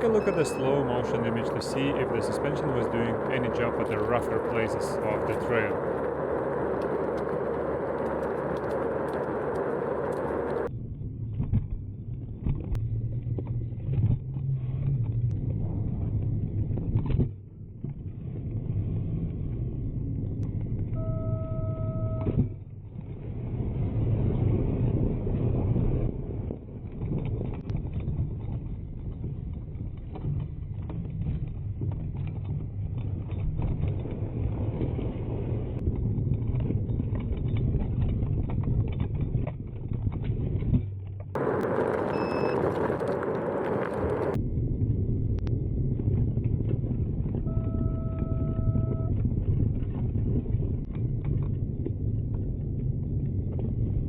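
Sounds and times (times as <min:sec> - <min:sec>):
two-tone beep: 0:00.0 - 0:00.9, 0:21.0 - 0:22.6, 0:42.2 - 0:42.6, 0:47.5 - 0:49.1
electric scooter riding rumble: 0:00.0 - 0:54.0.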